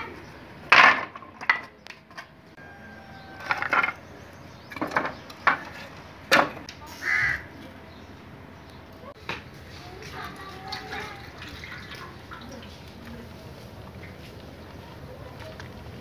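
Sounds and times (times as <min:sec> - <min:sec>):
wooden objects knocking together: 0:03.4 - 0:04.0, 0:04.7 - 0:06.6.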